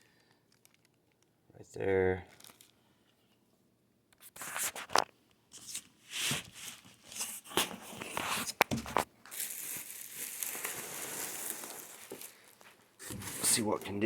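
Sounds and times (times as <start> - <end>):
packaging rustling: 2.3 - 2.8, 4.2 - 14.0.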